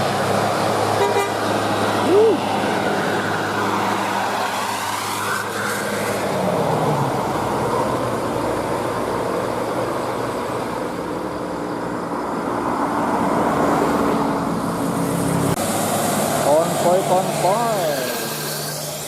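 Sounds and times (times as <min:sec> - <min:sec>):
tyre noise on road: 0:00.0 - 0:19.0
vehicle engines: 0:00.0 - 0:19.0.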